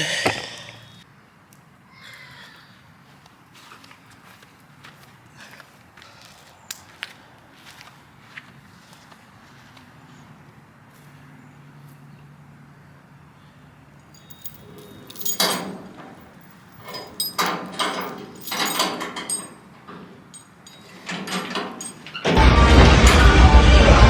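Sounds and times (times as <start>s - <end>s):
metallic clattering and rattling: 14.1s - 22.4s.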